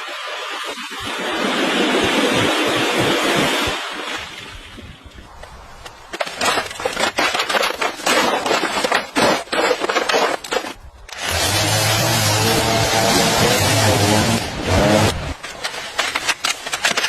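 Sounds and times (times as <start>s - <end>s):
scraping and knocking strokes: 5.4s - 17.0s.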